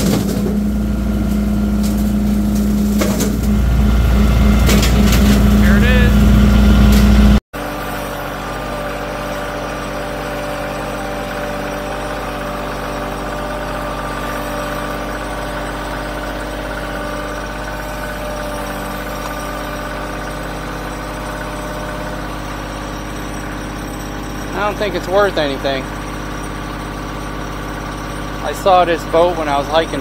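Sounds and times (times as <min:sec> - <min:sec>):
tractor diesel engine idling: 0:00.5 - 0:07.4, 0:24.1 - 0:30.0.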